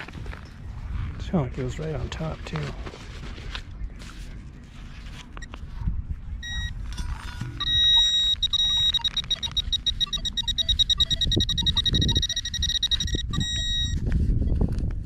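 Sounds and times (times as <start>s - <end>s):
rustling and scraping: 0.0s - 6.0s, 6.8s - 7.6s
high-pitched pulsing beep: 6.4s - 6.8s, 7.6s - 14.0s.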